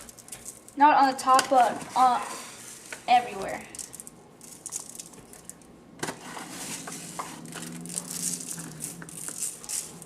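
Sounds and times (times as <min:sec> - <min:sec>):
sugar grains sprinkling on dough: 0:00.0 - 0:00.8, 0:02.6 - 0:05.7, 0:07.0 - 0:10.0.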